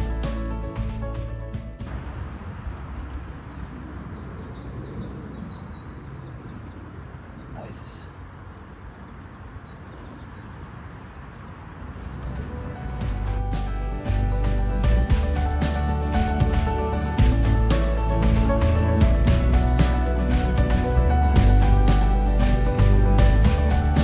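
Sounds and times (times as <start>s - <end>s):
small birds chirping: 1.8s - 24.0s.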